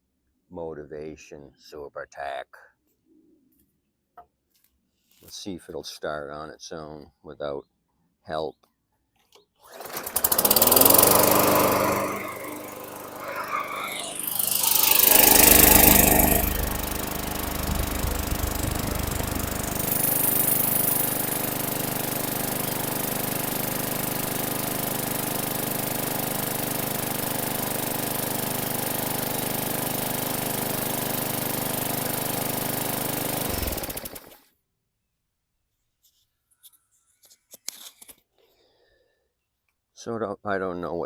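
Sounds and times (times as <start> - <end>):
lawn mower engine running: 9.7 - 34.4.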